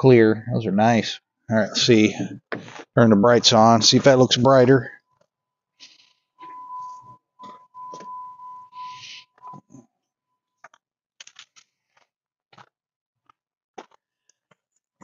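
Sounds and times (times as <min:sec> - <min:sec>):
electronic warning tone: 0:06.4 - 0:09.7.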